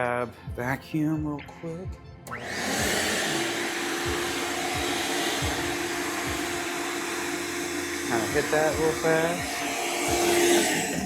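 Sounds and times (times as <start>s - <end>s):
vacuum cleaner running: 2.3s - 11.0s.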